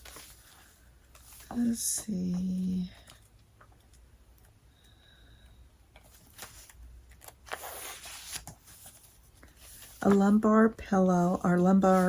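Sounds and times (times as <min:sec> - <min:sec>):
paper pages turning and rustling: 0:00.0 - 0:03.3, 0:06.0 - 0:10.5, 0:11.6 - 0:12.0.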